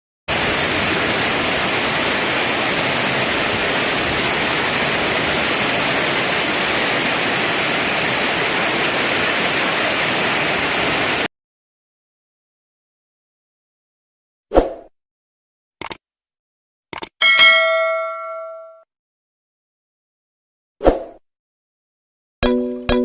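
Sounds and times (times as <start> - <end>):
heavy rain: 0.3 - 11.3.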